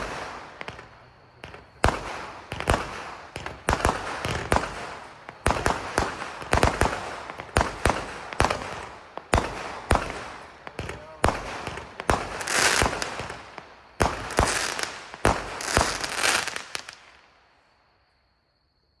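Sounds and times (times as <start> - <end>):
fireworks bangs: 0.0 - 17.6.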